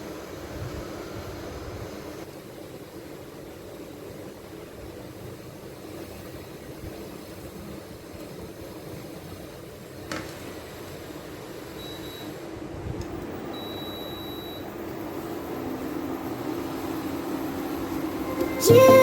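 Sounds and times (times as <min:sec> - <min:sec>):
short high electronic beeps: 0:13.6 - 0:14.6.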